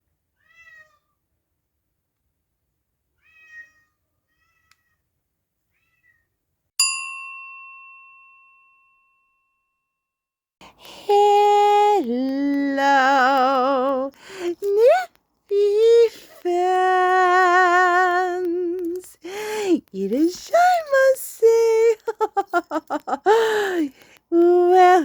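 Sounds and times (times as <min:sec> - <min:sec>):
cat meowing: 0:00.4 - 0:01.2, 0:03.2 - 0:05.0, 0:05.7 - 0:06.3
bell ding: 0:06.8 - 0:10.0.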